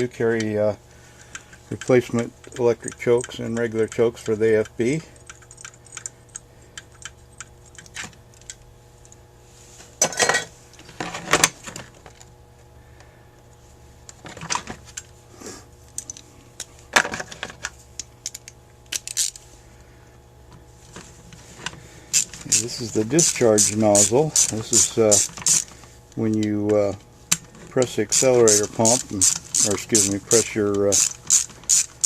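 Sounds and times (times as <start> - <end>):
metal parts and tools clinking: 10.0 - 12.2.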